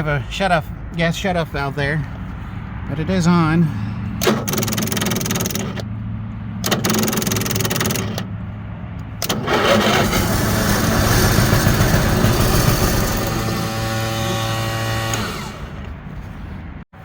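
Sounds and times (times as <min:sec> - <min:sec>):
generator cranking and running: 0:04.2 - 0:05.9, 0:06.6 - 0:08.4, 0:09.0 - 0:16.0.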